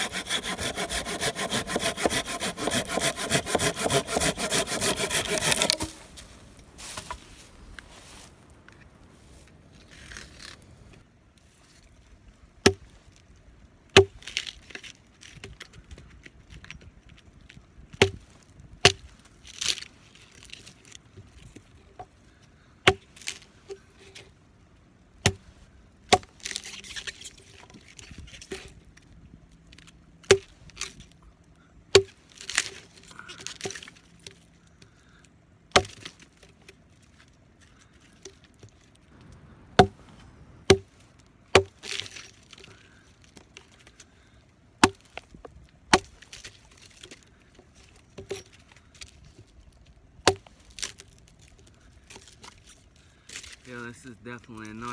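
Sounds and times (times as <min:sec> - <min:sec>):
hatchet chopping into wood: 0:00.0 - 0:06.0, 0:22.9 - 0:23.1, 0:25.2 - 0:25.5, 0:30.3 - 0:30.5, 0:31.9 - 0:32.2, 0:35.7 - 0:36.1, 0:39.8 - 0:40.0, 0:40.7 - 0:40.9, 0:41.5 - 0:41.8, 0:44.8 - 0:45.2, 0:45.9 - 0:46.2
wood rustling and scraping: 0:00.0 - 0:12.1, 0:36.0 - 0:44.2.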